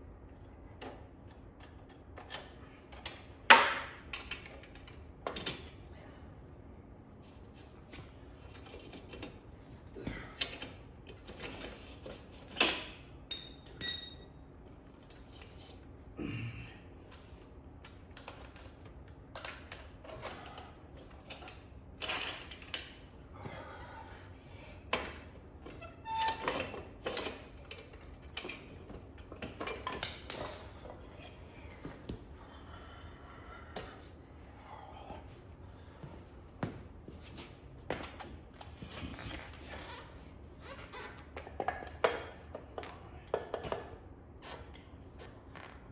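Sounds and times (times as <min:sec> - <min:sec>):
tools and metal parts clanking: 0:12.5 - 0:14.4, 0:26.1 - 0:31.3
short metallic ring: 0:13.3 - 0:14.4.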